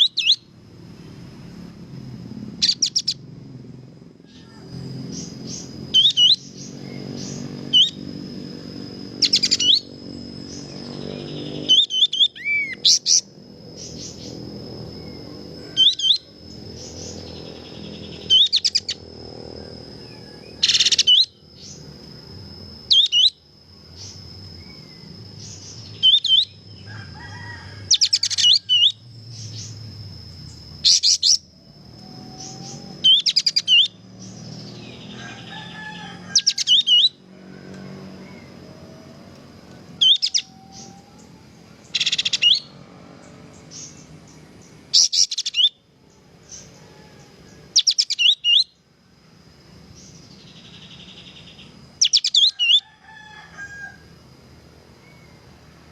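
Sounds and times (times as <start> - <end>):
bird singing whistled notes: 0.0 - 0.5, 2.6 - 3.2, 4.3 - 8.1, 8.7 - 21.9, 22.8 - 26.9, 28.0 - 30.0, 30.8 - 35.2, 36.4 - 37.2, 40.0 - 42.8, 43.7 - 45.9, 47.7 - 48.8, 50.0 - 52.8.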